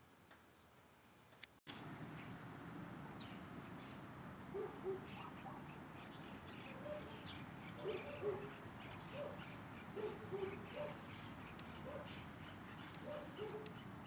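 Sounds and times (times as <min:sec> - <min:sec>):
birds chirping: 0:03.1 - 0:14.0.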